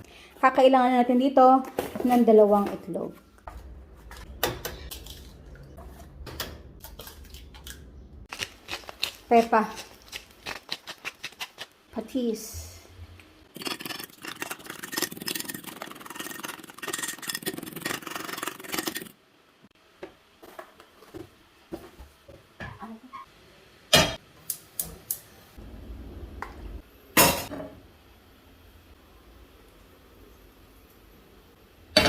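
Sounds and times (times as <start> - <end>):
utensil beating eggs in bowl: 8.3 - 11.8, 13.5 - 19.2.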